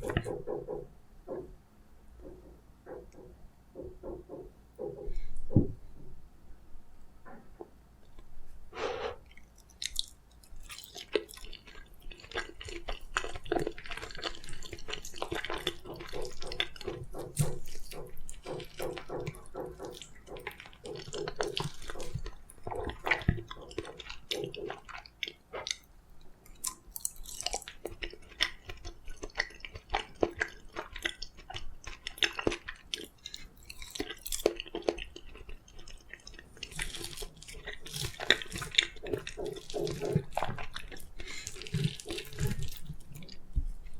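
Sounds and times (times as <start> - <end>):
chewing soft food: 9.2 - 43.9.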